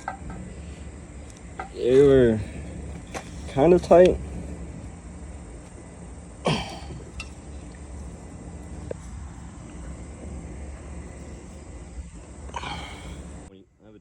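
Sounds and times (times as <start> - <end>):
steady low hum: 0.0 - 14.0
person coughing: 6.4 - 7.0.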